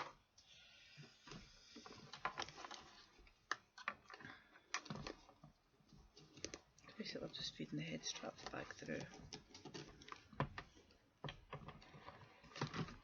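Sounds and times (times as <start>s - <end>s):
rustling of helmet padding: 8.3s - 13.0s.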